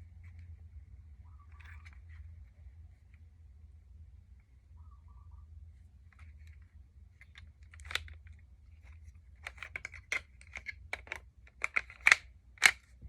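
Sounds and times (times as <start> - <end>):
plastic bricks clicking and clattering: 7.2 - 13.0.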